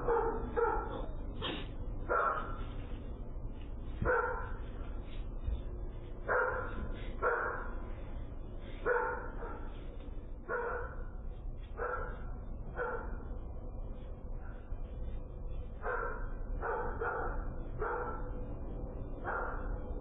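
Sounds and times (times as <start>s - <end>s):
dog barking: 0.0s - 1.2s, 2.1s - 2.6s, 4.0s - 4.6s, 6.3s - 7.7s, 8.8s - 9.7s, 10.5s - 11.1s, 11.8s - 13.3s, 15.8s - 18.3s, 19.2s - 19.8s
low background noise: 0.0s - 20.0s.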